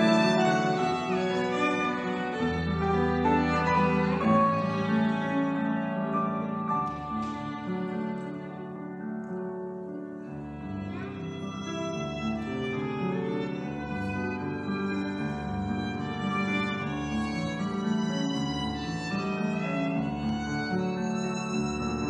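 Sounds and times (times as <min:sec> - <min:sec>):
piano accompaniment: 0:00.0 - 0:22.0
violin melody: 0:00.0 - 0:22.0.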